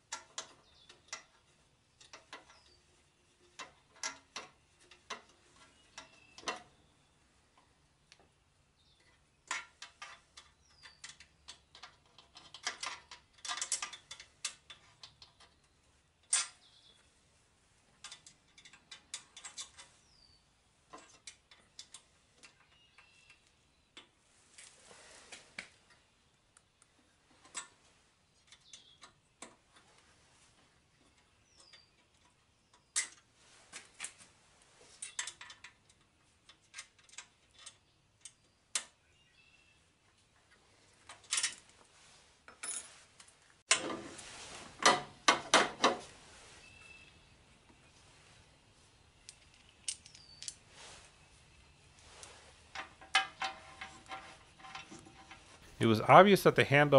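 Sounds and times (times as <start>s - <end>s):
clinks of metal parts and tools: 9.0s - 15.5s, 42.5s - 44.0s, 52.7s - 55.5s.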